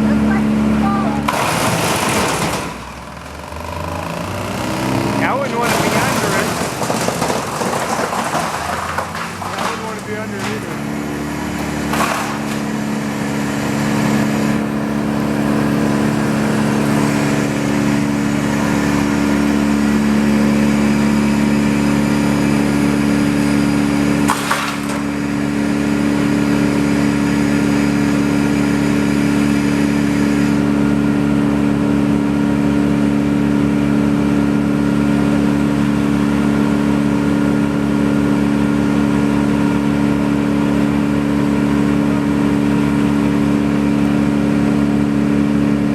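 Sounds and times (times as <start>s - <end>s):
engine-powered machinery running: 0.0s - 45.9s
sharp crack: 5.2s - 10.9s, 11.6s - 12.8s, 24.2s - 25.3s.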